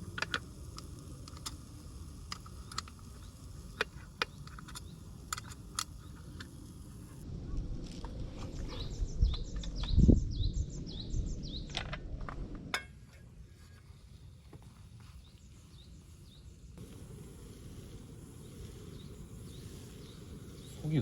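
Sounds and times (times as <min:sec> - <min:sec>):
low rumble: 0:06.7 - 0:12.8
bird chirping: 0:08.6 - 0:11.9, 0:18.3 - 0:21.0.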